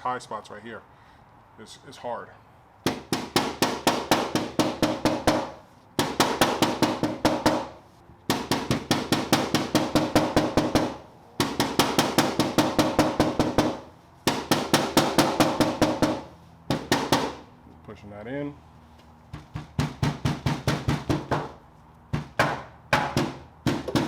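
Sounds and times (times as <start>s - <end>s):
hammer tapping on steel panel: 2.9s - 17.4s, 19.3s - 24.0s.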